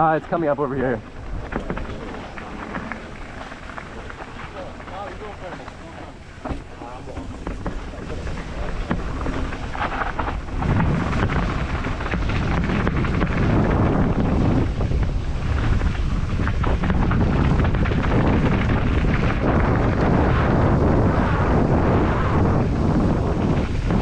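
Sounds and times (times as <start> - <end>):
mountain bike rattling on trail: 0.0 - 24.0
wind buffeting microphone: 0.0 - 24.0
bike clicks and knocks: 1.1 - 14.5.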